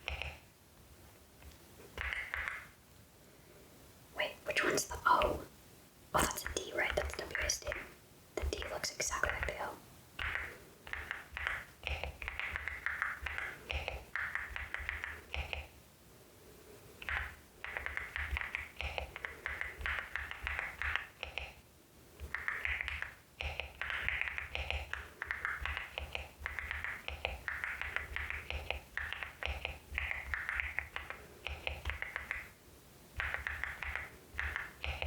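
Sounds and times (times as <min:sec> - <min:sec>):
mechanical keyboard typing: 0:02.0 - 0:02.7, 0:10.2 - 0:15.7, 0:17.0 - 0:21.6, 0:22.3 - 0:32.5, 0:33.2 - 0:35.0.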